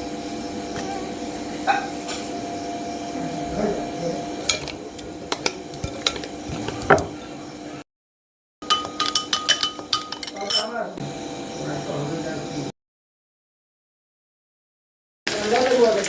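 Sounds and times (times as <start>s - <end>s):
utensil stirring in a pot: 3.9s - 7.4s, 8.6s - 10.7s
utensil clinking against pot: 4.4s - 7.3s, 8.6s - 10.8s.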